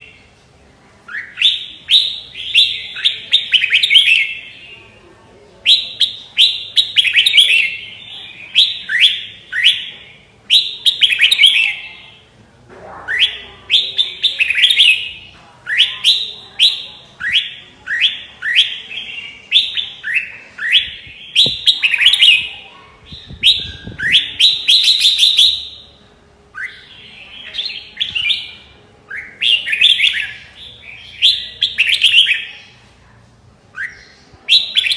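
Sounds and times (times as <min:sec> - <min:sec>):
bird singing: 0:01.1 - 0:04.8, 0:05.6 - 0:12.3, 0:23.1 - 0:32.8.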